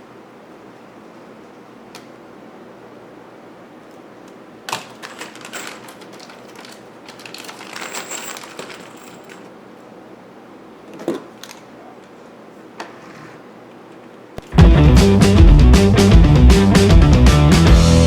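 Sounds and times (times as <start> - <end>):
chair parts scraping and clattering: 4.7 - 9.5, 12.8 - 13.5.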